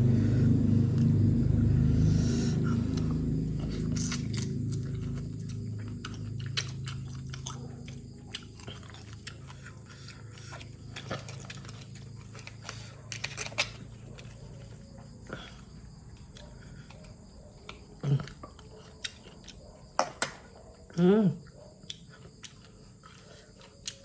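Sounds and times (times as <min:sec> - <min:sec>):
low hum: 0:00.0 - 0:18.3
chewing and crunching: 0:00.0 - 0:24.0.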